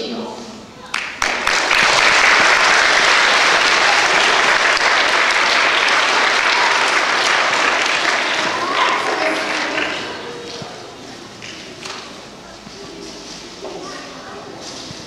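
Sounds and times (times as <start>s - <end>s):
large audience applauding: 0.9s - 12.2s.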